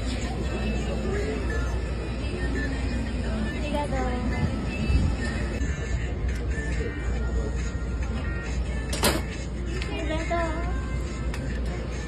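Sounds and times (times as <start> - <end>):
background music: 0.0 - 12.0
low rumble of street noise: 0.0 - 12.0.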